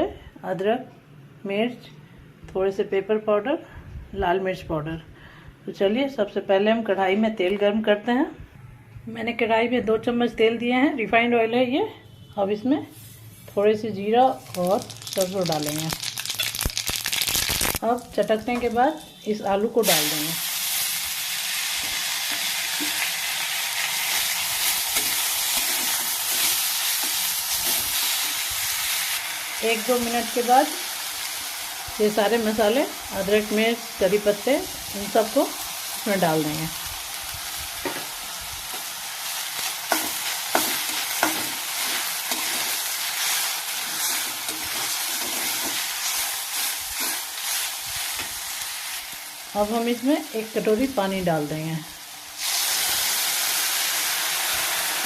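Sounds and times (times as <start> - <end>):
potato sizzling in hot oil: 14.4 - 55.0.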